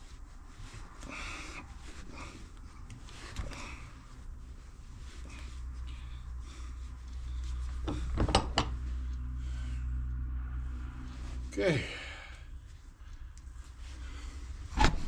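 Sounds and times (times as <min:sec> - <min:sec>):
hose fittings rubbing: 0:00.0 - 0:09.2
steady low hum: 0:00.0 - 0:15.0.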